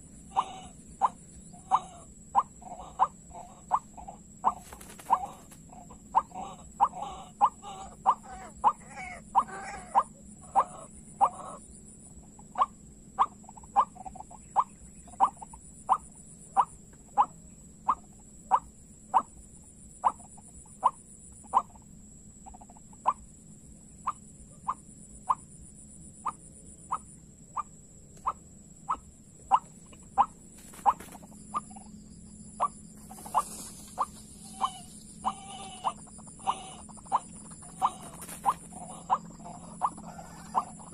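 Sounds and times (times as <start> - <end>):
waterhen calling: 0.0 - 11.6, 28.3 - 31.9, 33.0 - 40.9.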